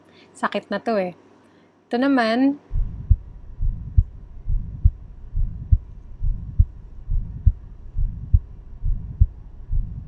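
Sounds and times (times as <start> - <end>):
heart murmur: 2.7 - 10.0
heart valve click: 2.8 - 10.0.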